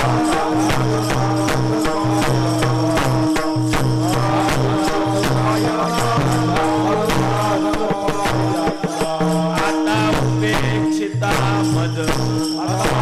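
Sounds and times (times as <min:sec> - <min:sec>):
drum beat: 0:00.0 - 0:13.0
hand cymbals: 0:00.0 - 0:13.0
held drone: 0:00.0 - 0:13.0.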